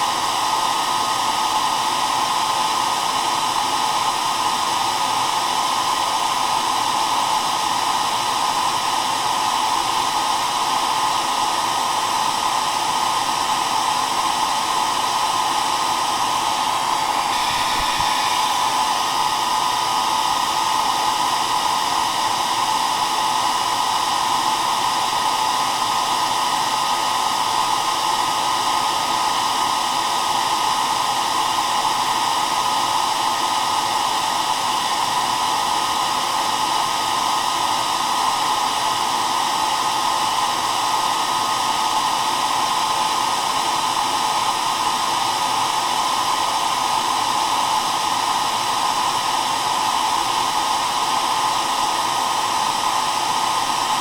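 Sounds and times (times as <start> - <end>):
hair dryer blowing: 0.0 - 54.0.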